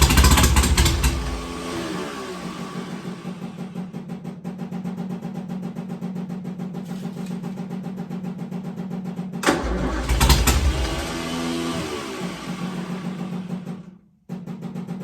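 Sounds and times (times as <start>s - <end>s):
engine starter cranking: 0.0s - 4.0s, 9.4s - 13.9s
engine catching and running: 0.0s - 15.0s.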